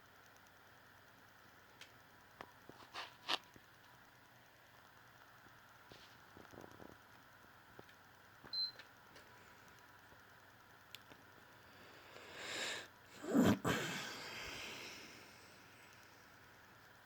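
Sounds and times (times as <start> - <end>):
rustling noise: 2.6 - 3.6, 5.8 - 7.1.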